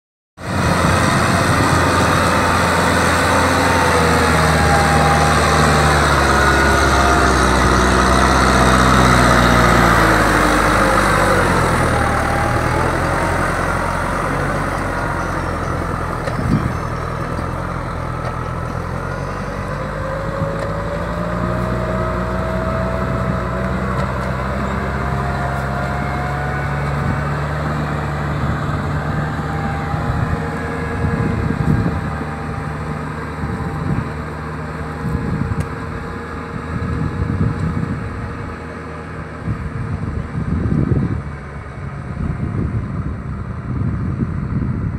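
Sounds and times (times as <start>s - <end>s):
tractor diesel engine running: 0.4s - 44.9s.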